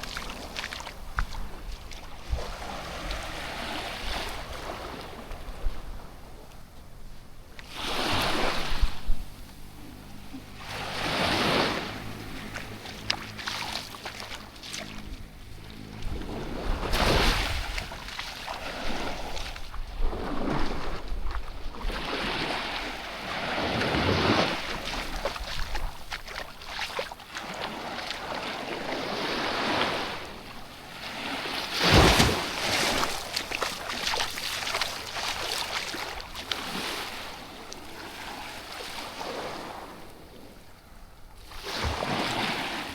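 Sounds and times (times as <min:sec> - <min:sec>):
wind on microphone: 0:00.0 - 0:13.4, 0:14.4 - 0:26.9
small waves washing onto beach: 0:00.0 - 0:42.9
low motor drone: 0:08.9 - 0:19.0.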